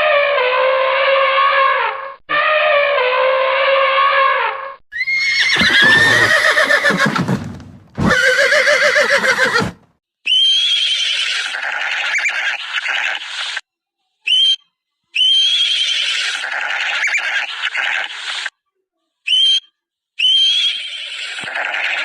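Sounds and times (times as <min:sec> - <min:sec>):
horse whinnying: 0:04.9 - 0:09.8, 0:15.5 - 0:18.5, 0:20.4 - 0:22.0.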